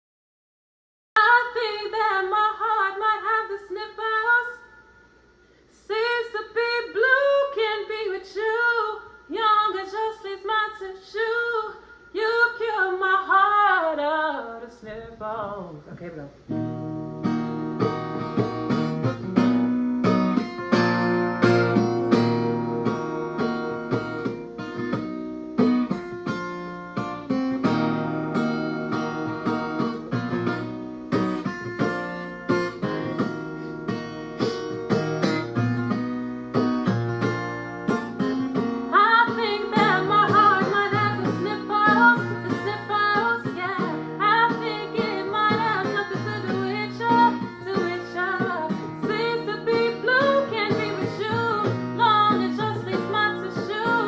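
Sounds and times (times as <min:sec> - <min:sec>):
plucked guitar chords: 0:16.5 - 0:54.0.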